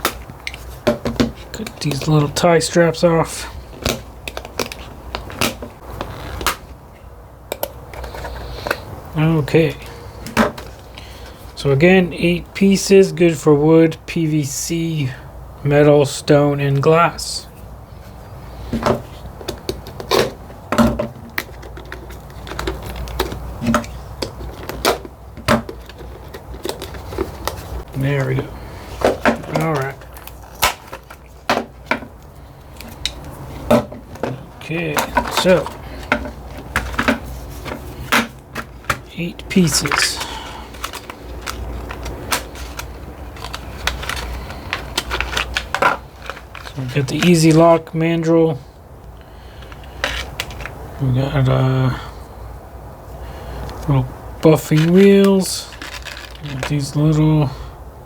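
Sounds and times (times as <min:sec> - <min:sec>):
plastic packaging handled: 0:18.6 - 0:47.9, 0:49.6 - 0:50.8, 0:54.5 - 0:57.5.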